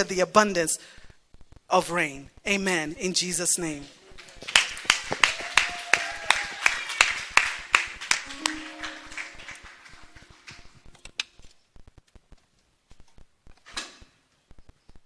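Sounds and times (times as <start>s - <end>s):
congregation clapping in rhythm: 3.8s - 11.5s
held musical notes: 8.0s - 11.2s.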